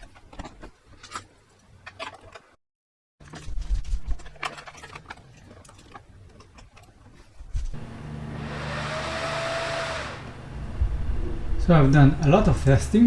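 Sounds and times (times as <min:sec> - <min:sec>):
cooling fan whirring: 0:07.7 - 0:13.0
low hum: 0:07.8 - 0:12.9.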